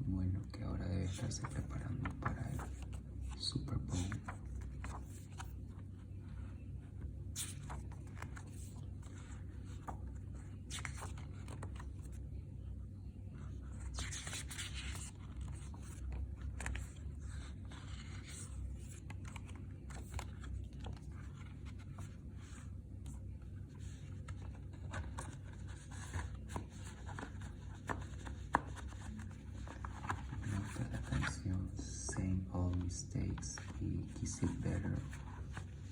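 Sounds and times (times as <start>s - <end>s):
low steady hum: 0.0s - 35.9s
paper scraping and rustling: 7.3s - 12.2s, 13.5s - 22.7s, 23.7s - 31.5s.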